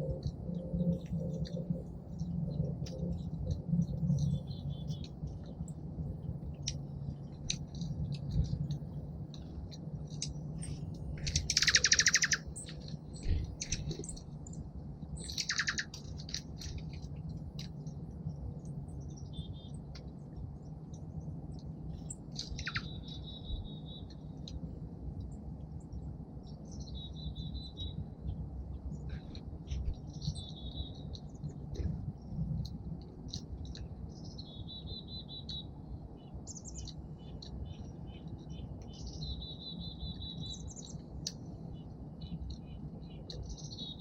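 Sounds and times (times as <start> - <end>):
small songbirds chirping: 0.0 - 24.6, 25.2 - 44.0
steady low hum: 0.0 - 44.0
bird trill: 10.2 - 14.2, 15.2 - 16.1, 22.0 - 24.2, 36.5 - 41.0.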